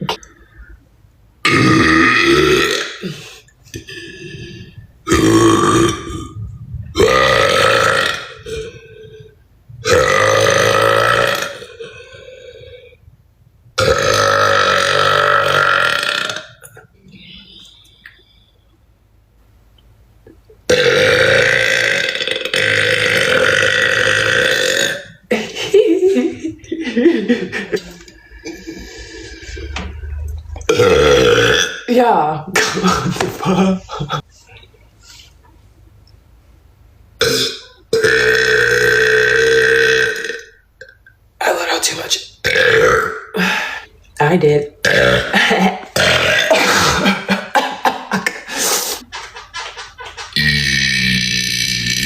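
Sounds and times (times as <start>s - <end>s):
woman burping: 1.4s - 6.4s, 7.0s - 9.2s, 20.7s - 25.6s, 37.2s - 41.0s, 44.8s - 48.4s, 49.7s - 52.0s.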